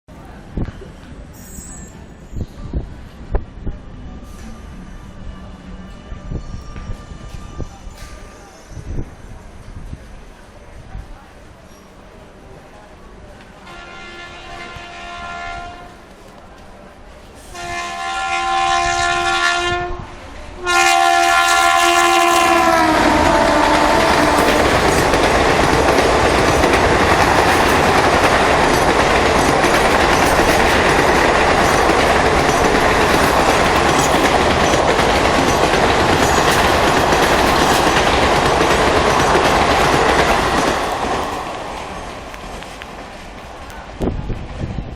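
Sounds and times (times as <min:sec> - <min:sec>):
train coaches rushing past: 0:00.1 - 0:44.9
locomotive air horn honking: 0:13.7 - 0:16.0, 0:17.5 - 0:20.0, 0:20.6 - 0:25.2.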